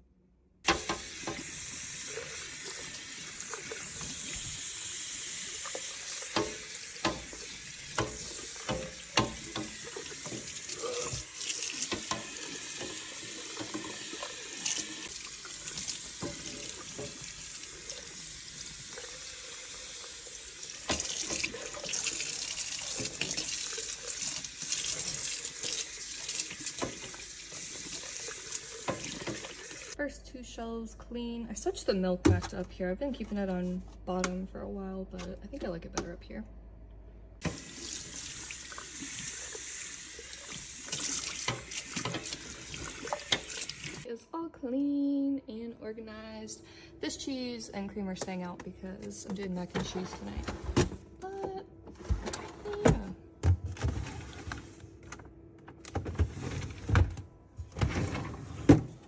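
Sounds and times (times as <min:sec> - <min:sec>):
tap water running into sink: 0:00.7 - 0:30.0, 0:37.4 - 0:44.1.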